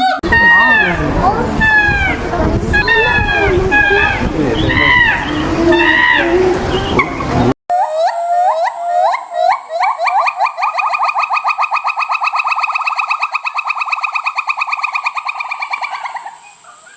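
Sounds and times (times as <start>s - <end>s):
primate whooping calls: 0.0s - 12.2s.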